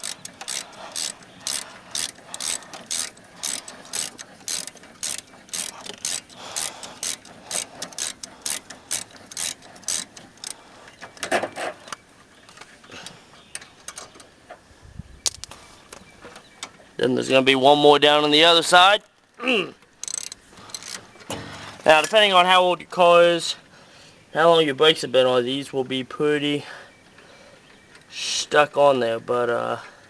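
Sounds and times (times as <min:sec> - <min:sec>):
socket ratchet clicking: 0:00.0 - 0:10.6, 0:20.0 - 0:21.0
scattered light tool sounds: 0:00.0 - 0:13.1, 0:20.0 - 0:22.2.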